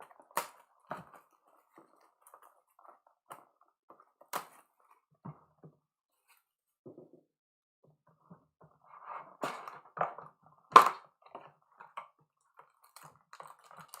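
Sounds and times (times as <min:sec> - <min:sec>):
card packs crinkling: 0:12.6 - 0:14.0.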